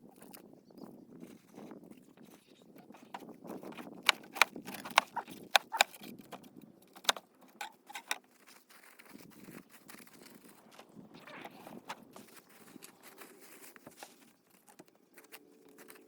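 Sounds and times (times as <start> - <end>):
sharp clicks and knocks: 3.6 - 8.2.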